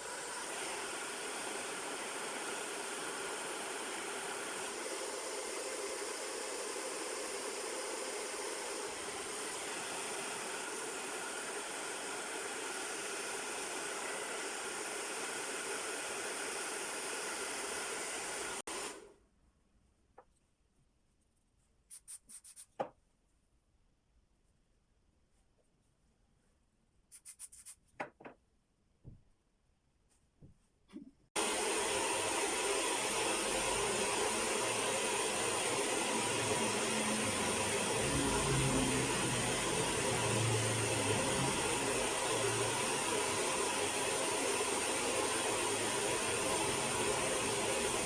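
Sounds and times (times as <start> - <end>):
hair dryer blowing: 0.0 - 19.2, 31.4 - 48.0.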